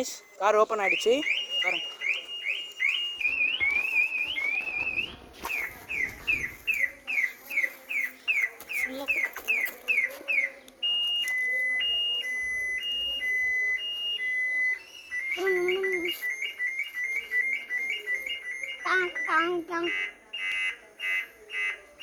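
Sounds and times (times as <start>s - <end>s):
car alarm siren: 0.0s - 22.0s.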